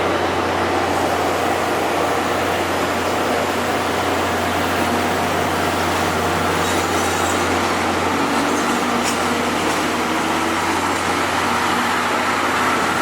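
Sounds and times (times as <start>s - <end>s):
train rolling on rails: 0.0s - 13.0s.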